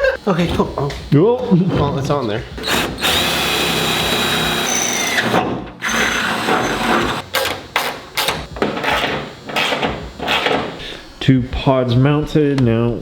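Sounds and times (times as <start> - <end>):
power drill whining: 2.6 - 7.4.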